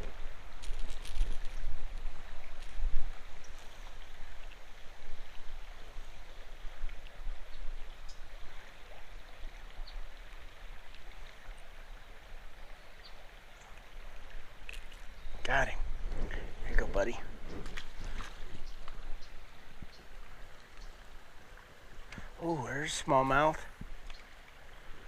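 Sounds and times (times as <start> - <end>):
creek water running: 0.0 - 25.0
faint ticks: 23.8 - 24.6.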